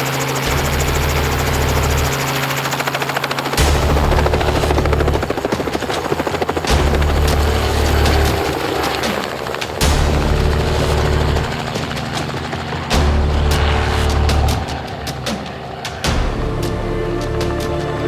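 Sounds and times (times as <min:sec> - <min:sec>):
helicopter engine drone: 0:00.0 - 0:18.0
helicopter rotor chopping: 0:00.0 - 0:18.0.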